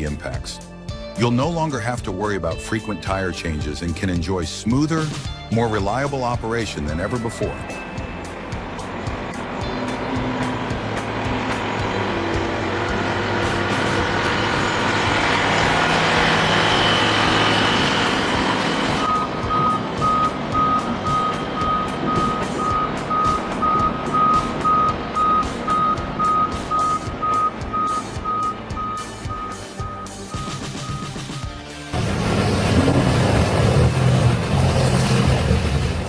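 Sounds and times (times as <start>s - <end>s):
diesel engine running: 6.2s - 36.0s
reversing alarm beeping: 16.4s - 31.4s.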